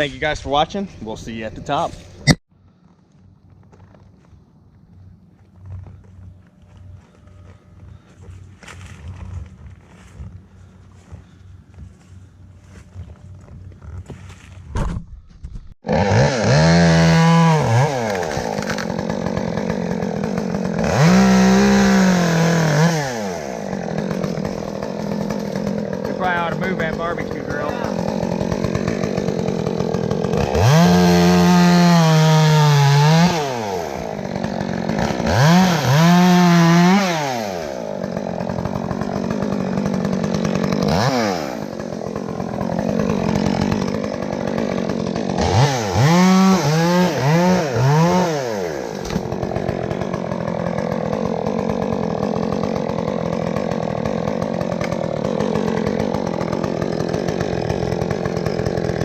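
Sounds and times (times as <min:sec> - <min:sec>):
chainsaw revving and idling: 0:15.8 - 0:59.0.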